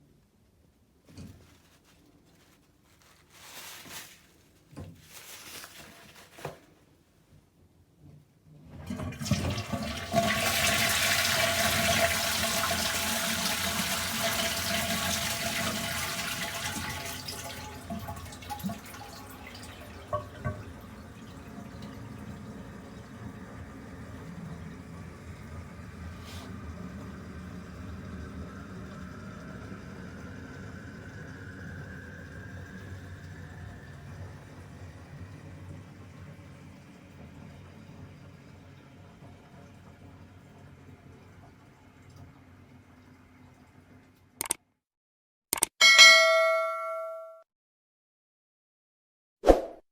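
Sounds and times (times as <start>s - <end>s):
toilet flushing water rush: 8.6s - 44.2s
water running: 8.7s - 44.1s.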